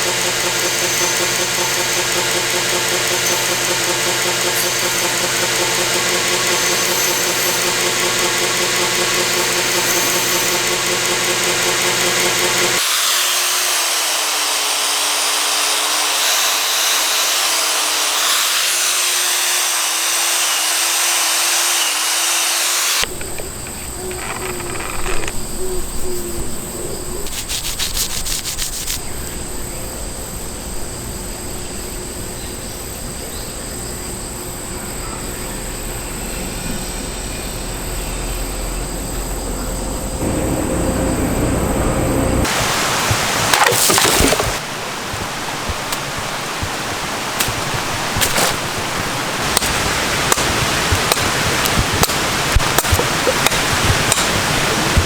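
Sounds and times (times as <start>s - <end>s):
rapid clicks: 0.0s - 12.8s, 43.1s - 55.0s
power tool hissing and humming: 0.0s - 23.1s, 35.7s - 55.0s
tool rubbing: 0.0s - 23.4s, 27.2s - 29.1s, 42.4s - 55.0s.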